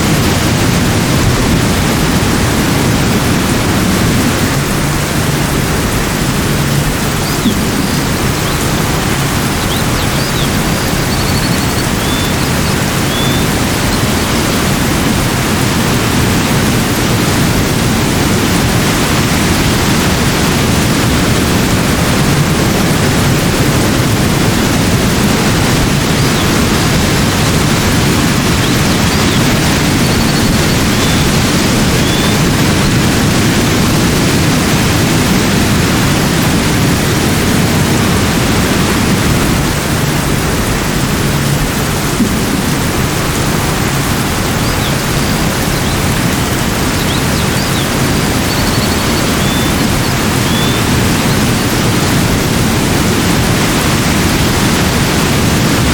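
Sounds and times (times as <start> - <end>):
running water rushing: 0.0 - 55.9
faint bird chirps: 7.1 - 14.8, 27.4 - 32.9, 44.4 - 51.8.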